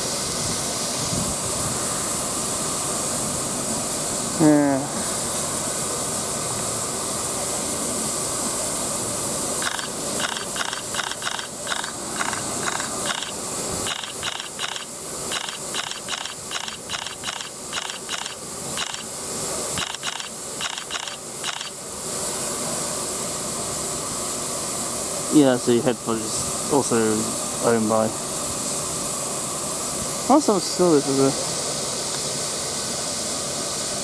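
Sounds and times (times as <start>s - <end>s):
steam locomotive hissing: 0.0s - 34.0s
rhythmic pulsing: 9.6s - 19.1s, 19.8s - 21.7s.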